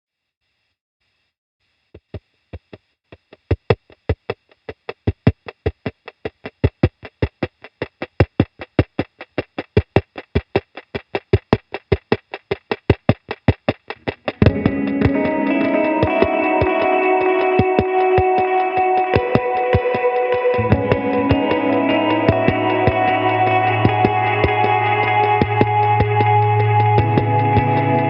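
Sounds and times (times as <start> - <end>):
synthesizer percussive hits with delay: 14.1 - 18.5, 20.6 - 28.0.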